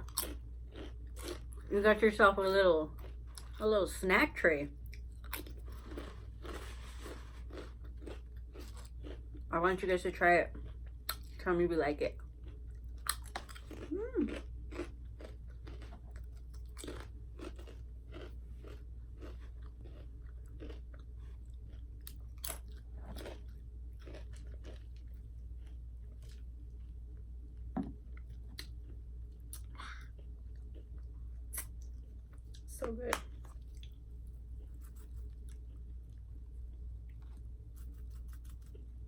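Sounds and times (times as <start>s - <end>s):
person chewing crunchy food: 0.0s - 1.8s, 2.9s - 3.6s, 4.8s - 9.5s, 12.2s - 39.0s
steady low hum: 0.0s - 39.0s.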